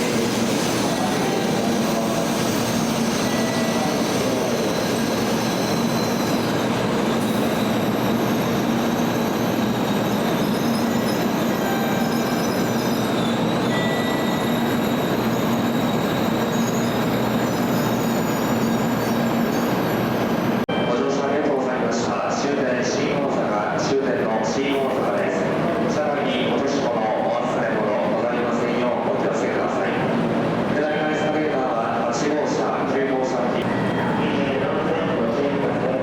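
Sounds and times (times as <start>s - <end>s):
train running at low speed: 0.0s - 20.9s.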